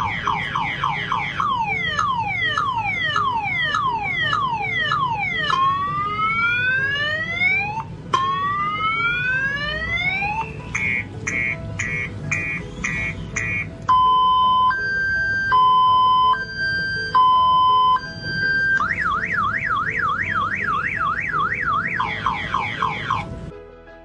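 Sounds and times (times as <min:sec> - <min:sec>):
car alarm siren: 0:00.0 - 0:23.3
faint background music: 0:00.0 - 0:24.0.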